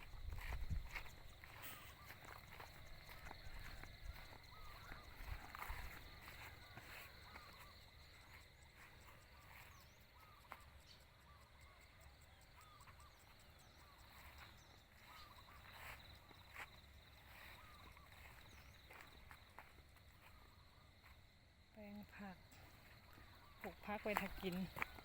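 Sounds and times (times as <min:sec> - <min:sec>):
bird chirps: 0:00.0 - 0:19.2
high insect drone: 0:00.0 - 0:25.0.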